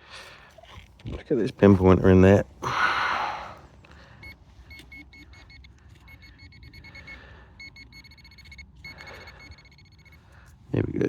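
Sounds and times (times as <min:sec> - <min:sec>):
metal detector probe beeping: 0:04.2 - 0:10.6.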